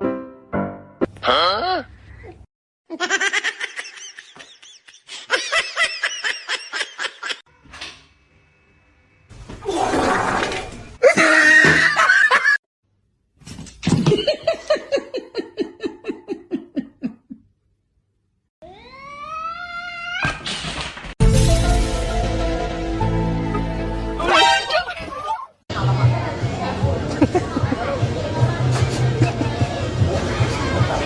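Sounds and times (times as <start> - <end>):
person laughing in rapid bursts: 2.9 - 7.4, 11.0 - 12.6, 14.1 - 17.4.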